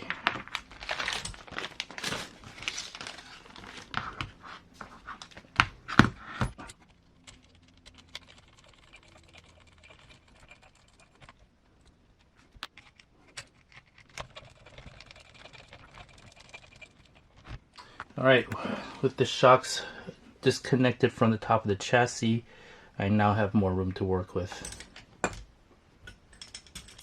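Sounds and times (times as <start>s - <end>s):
small tools and parts clicking: 26.0s - 27.0s.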